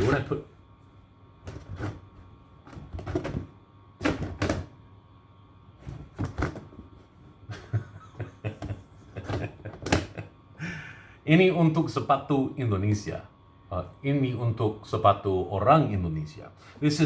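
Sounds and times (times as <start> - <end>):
plastic doors knocking and clacking: 2.7 - 4.7, 8.6 - 10.2.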